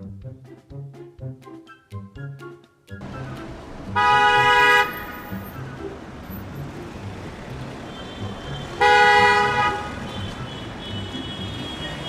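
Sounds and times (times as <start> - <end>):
car horn honk: 3.9 - 5.7, 7.7 - 12.0.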